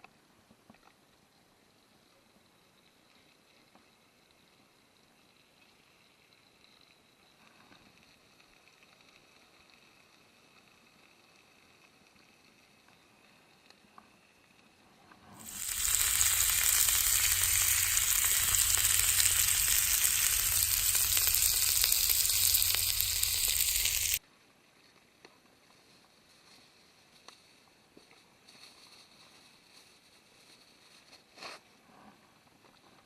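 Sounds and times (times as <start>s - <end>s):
food sizzling in a skillet: 15.4s - 24.2s.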